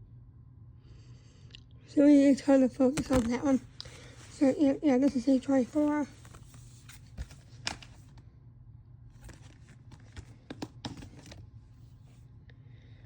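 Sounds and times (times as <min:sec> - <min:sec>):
plastic case clicks: 0:09.2 - 0:11.4.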